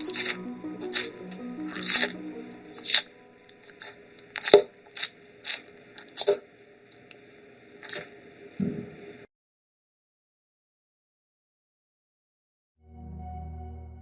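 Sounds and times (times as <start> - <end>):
chewing and crunching: 0.0 - 8.7.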